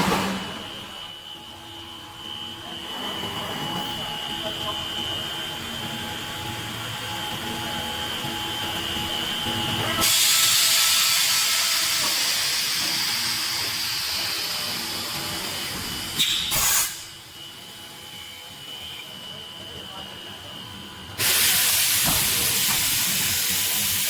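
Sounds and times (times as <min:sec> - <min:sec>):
sharp burst of air: 0:10.0 - 0:14.0, 0:16.2 - 0:17.2, 0:21.2 - 0:24.0
compressed air hiss: 0:10.0 - 0:14.3, 0:16.2 - 0:17.1, 0:21.2 - 0:24.0.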